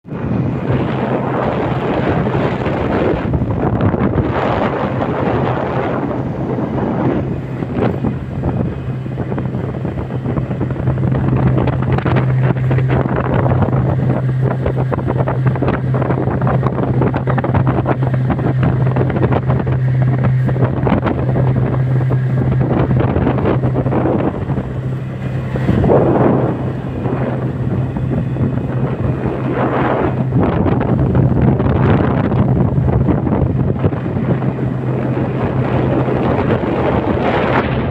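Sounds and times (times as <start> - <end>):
motorboat engine running: 0.0 - 37.9
wind buffeting the microphone: 0.0 - 37.9.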